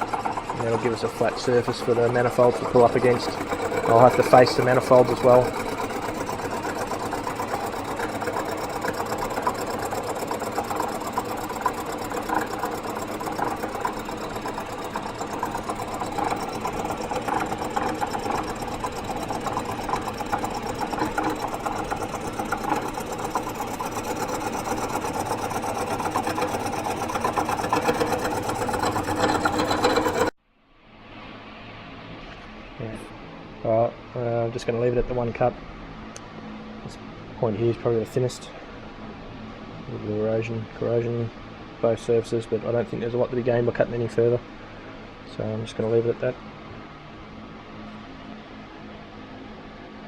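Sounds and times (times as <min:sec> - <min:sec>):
milling machine cutting metal: 0:00.0 - 0:30.3.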